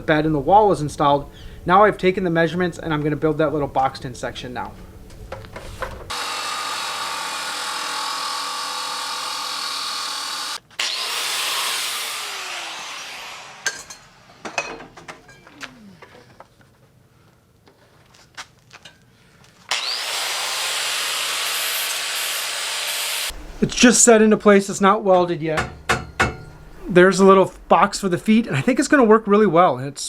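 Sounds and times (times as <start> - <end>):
disc power tool cutting steel: 6.1 - 14.6, 19.7 - 23.4
sharp metal knocks and taps: 25.6 - 26.5.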